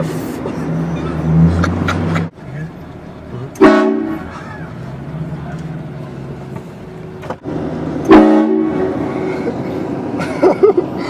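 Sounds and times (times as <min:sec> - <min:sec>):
short loud horn burst: 0:03.6 - 0:04.2, 0:08.1 - 0:09.0
train horn blast: 0:03.6 - 0:04.3, 0:08.0 - 0:09.2.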